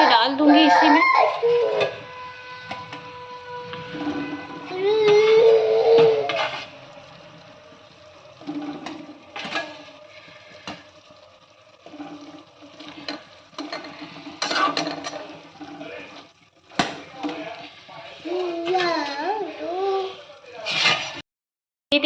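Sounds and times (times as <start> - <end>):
syrup sloshing and splashing: 1.3 - 21.2.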